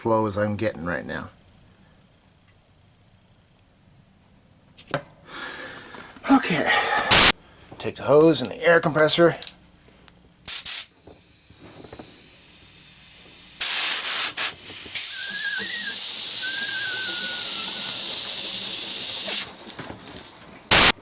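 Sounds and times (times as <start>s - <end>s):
compressed air hissing from hose: 7.1s - 7.3s, 10.5s - 21.0s
faint wavering whistle: 14.8s - 19.4s.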